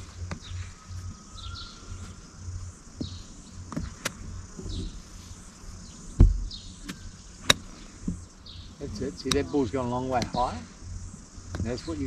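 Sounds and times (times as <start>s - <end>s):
birds chirping: 0.0s - 12.0s
golf balls being struck: 3.0s - 4.3s, 6.1s - 8.2s, 9.2s - 10.5s.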